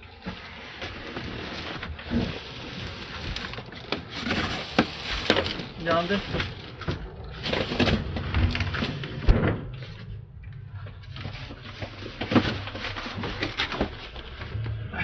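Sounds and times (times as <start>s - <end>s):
refrigerator knocking and rattling: 3.8s - 14.6s.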